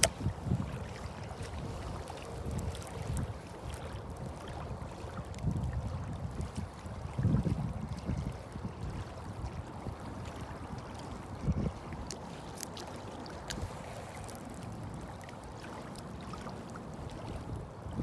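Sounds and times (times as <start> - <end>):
faint clicks: 0.0 - 0.2
water and wind washing: 0.0 - 18.0.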